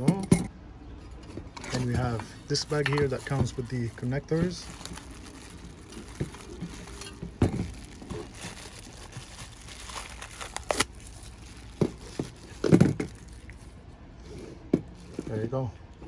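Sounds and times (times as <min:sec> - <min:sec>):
plastic bag crinkling: 0:01.7 - 0:13.8.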